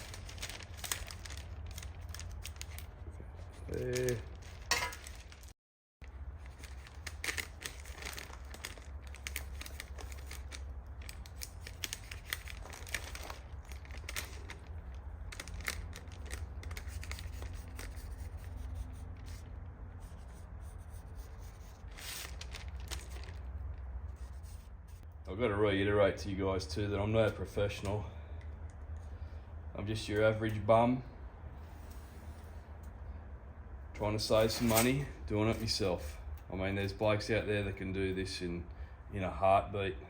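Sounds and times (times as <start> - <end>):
paper crinkling and rustling: 0.0 - 19.5, 21.0 - 23.6, 34.3 - 36.2.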